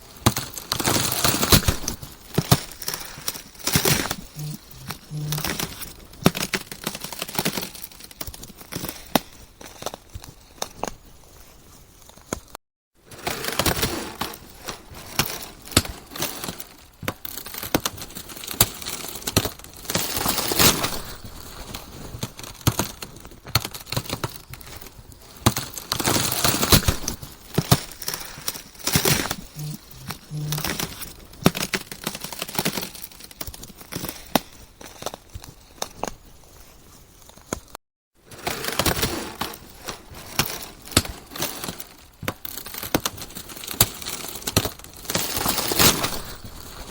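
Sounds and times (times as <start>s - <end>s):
ice cracking and crunching: 0.0s - 46.9s.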